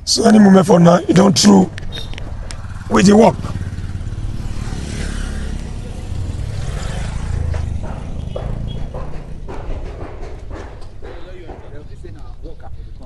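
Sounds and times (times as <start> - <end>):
vehicle rumbling past: 1.1 - 13.0
short knocks: 6.3 - 12.4.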